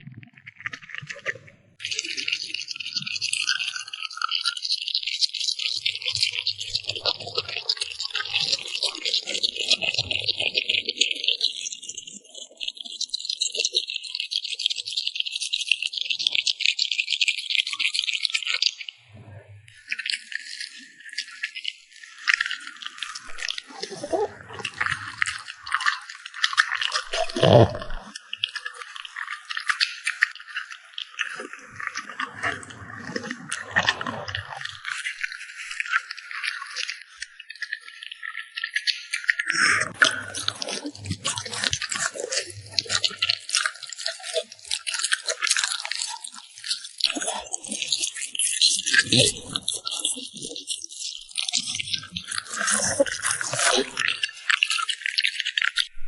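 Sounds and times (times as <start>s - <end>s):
dog crunching food: 40.0s - 48.2s.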